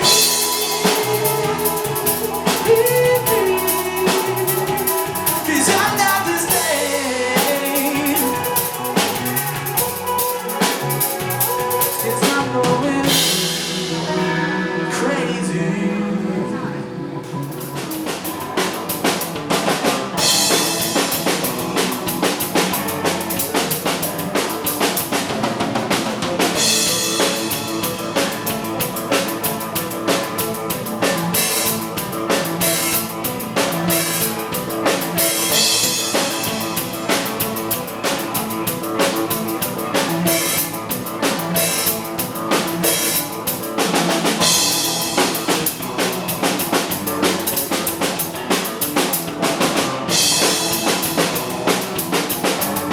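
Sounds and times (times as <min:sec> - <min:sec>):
bass drum and snare beat: 0:00.0 - 0:13.6
live band playing: 0:00.0 - 0:52.9.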